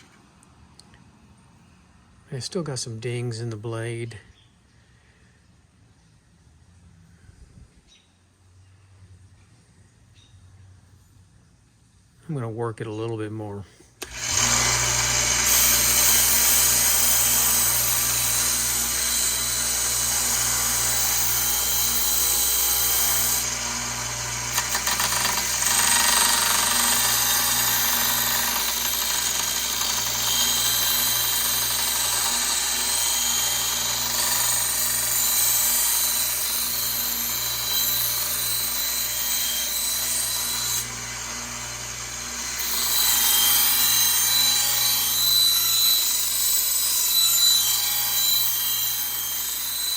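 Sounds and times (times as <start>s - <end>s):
grinder motor hum: 14.0s - 49.9s.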